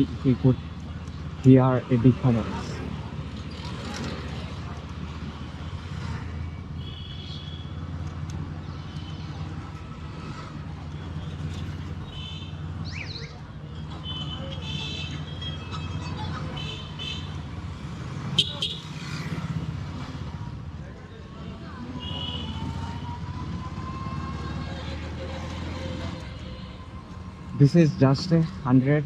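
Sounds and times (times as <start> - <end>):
motorcycle engine hum: 0.0 - 29.0
vehicle horn toots: 6.8 - 7.8, 11.2 - 12.7, 14.0 - 16.0, 18.3 - 18.9, 22.0 - 22.7.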